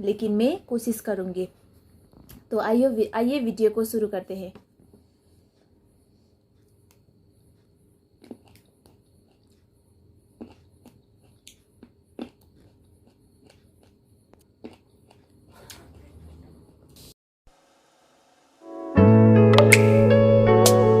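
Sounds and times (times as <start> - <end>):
grapes being bitten: 8.2 - 9.6, 10.4 - 14.0, 14.6 - 15.8.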